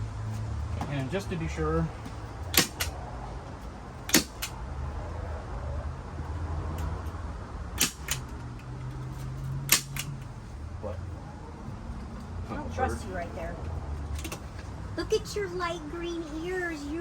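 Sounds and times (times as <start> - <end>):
staple gun snapping: 2.5 - 2.9, 4.1 - 4.6, 7.8 - 8.3, 9.7 - 10.1.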